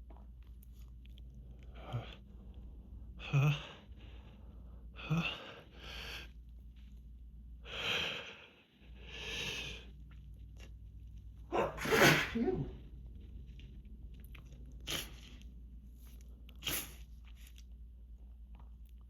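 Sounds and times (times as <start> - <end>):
wheezy gasps and sniffs: 11.6 - 13.0, 14.8 - 17.6.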